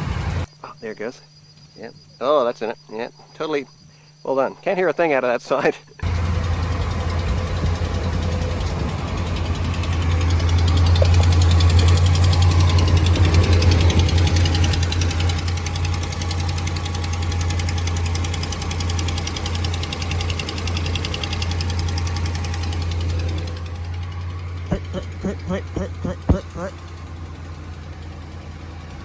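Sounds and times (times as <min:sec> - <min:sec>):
car engine idling: 0:06.0 - 0:29.0
exhaust leak ticking: 0:06.0 - 0:29.0.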